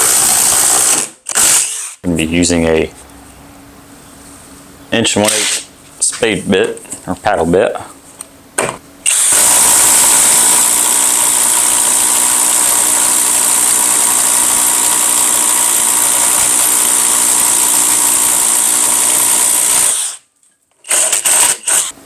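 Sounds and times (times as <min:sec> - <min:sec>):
impact driver boring: 0:00.0 - 0:02.0, 0:09.0 - 0:20.2, 0:20.8 - 0:22.0.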